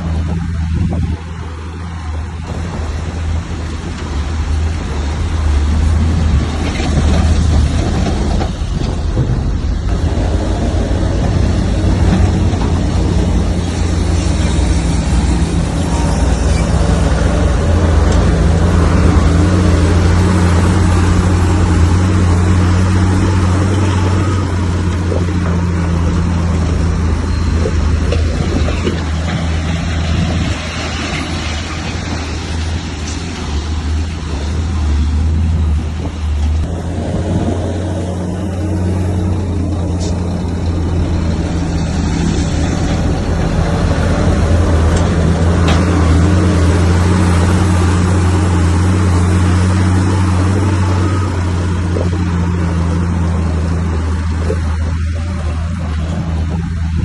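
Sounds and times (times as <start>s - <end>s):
bulldozer diesel engine running: 0.0s - 57.0s.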